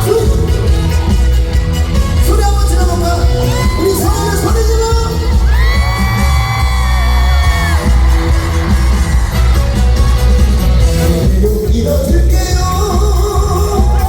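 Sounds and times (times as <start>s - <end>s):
amplified backing music with bass: 0.0s - 14.0s
person singing: 10.9s - 14.0s.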